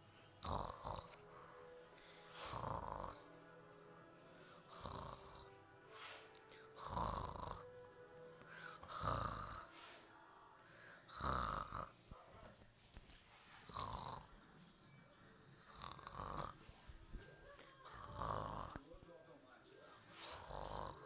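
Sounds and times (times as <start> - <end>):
man snoring: 0.0 - 1.4, 2.3 - 3.4, 4.6 - 7.8, 8.7 - 10.0, 11.0 - 12.2, 13.6 - 14.4, 15.6 - 16.6, 17.8 - 18.9, 20.1 - 21.0.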